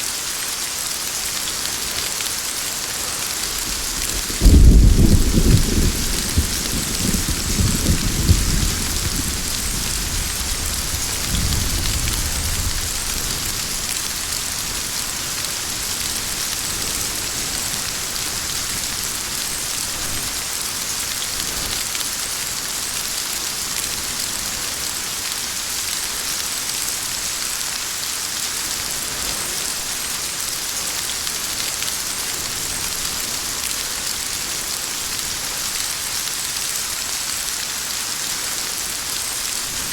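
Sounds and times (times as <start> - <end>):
heavy rain: 0.0 - 39.9
thunder rumbling: 3.7 - 13.8.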